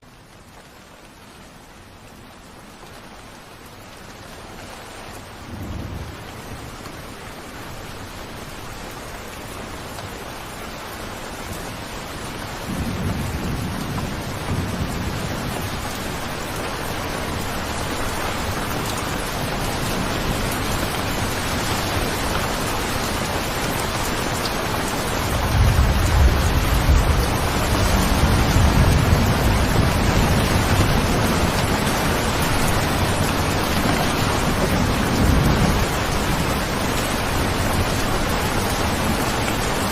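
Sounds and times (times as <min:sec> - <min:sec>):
steady rain hiss: 0:00.0 - 0:39.9
rolling thunder: 0:12.6 - 0:16.0, 0:25.3 - 0:38.0.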